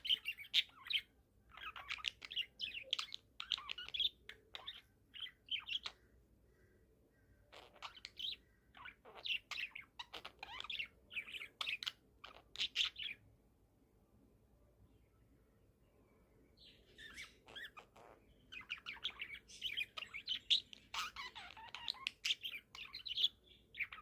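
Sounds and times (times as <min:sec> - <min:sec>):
budgerigar chirping: 0:00.0 - 0:06.1, 0:07.5 - 0:13.2, 0:16.9 - 0:24.0.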